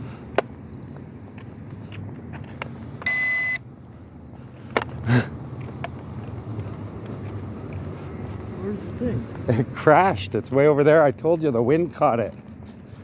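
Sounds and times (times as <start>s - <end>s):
remote controller electronic beep: 3.0s - 3.6s.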